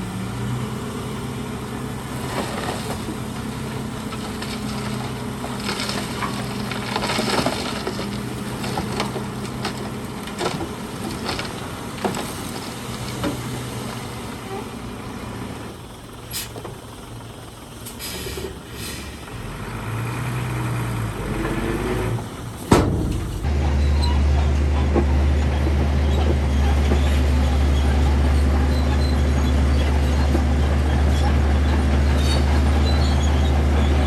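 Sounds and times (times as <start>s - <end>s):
diesel construction machinery engine: 0.0s - 34.0s
metal clanks: 2.3s - 14.0s, 22.5s - 23.6s
sharp bang: 22.7s - 23.6s.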